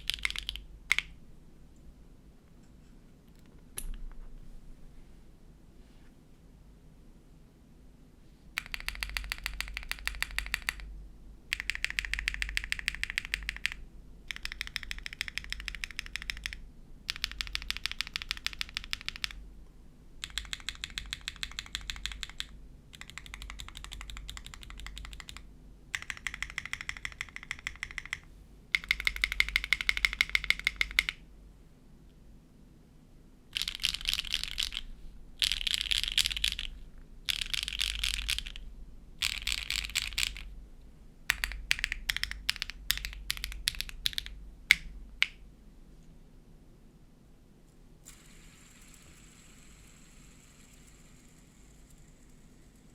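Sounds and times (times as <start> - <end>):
mechanical keyboard typing: 0.0 - 1.1, 8.6 - 10.9, 11.5 - 19.4, 20.2 - 31.2, 33.6 - 38.6, 39.2 - 40.5, 41.3 - 45.4.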